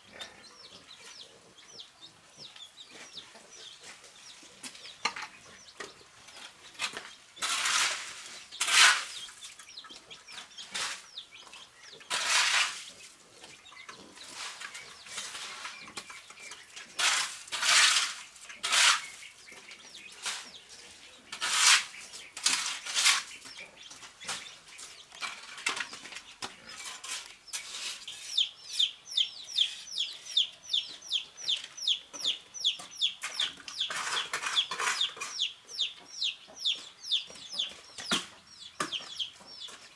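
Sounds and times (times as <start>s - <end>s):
rushing or scraping noises: 17.0s - 19.2s, 21.3s - 23.4s.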